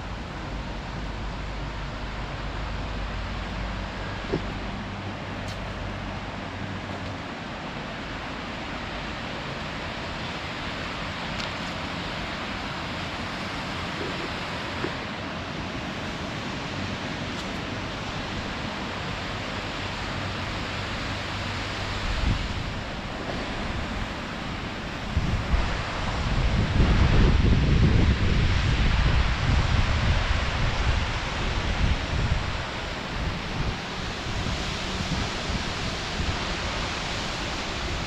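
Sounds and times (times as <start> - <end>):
river water rushing over rocks: 0.0 - 38.0
wind buffeting microphone: 21.4 - 38.0.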